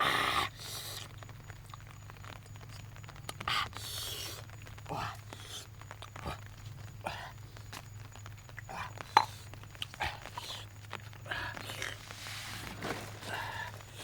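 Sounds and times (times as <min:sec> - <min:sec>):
steady low hum: 0:00.0 - 0:14.0
scraping rustling noises: 0:10.7 - 0:14.0.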